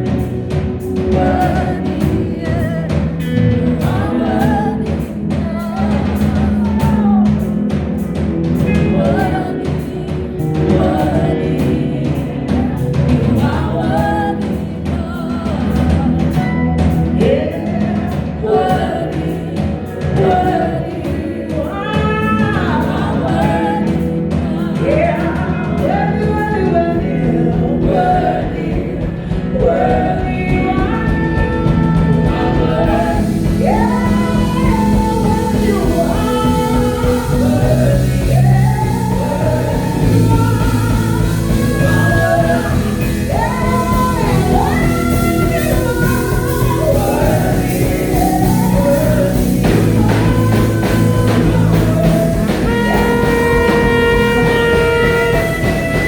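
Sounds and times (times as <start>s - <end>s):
gospel singing over a band: 0.0s - 56.0s.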